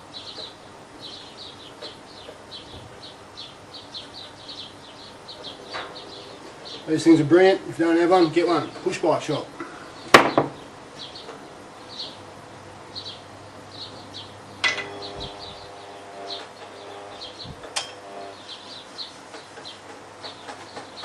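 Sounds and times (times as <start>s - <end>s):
small birds chirping: 0.0s - 21.0s
metal clanks: 14.6s - 15.1s.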